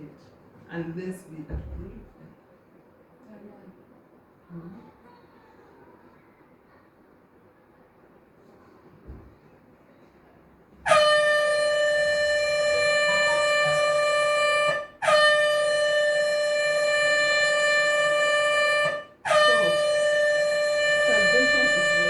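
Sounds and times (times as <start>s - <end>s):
air horn blasts: 10.8s - 22.0s.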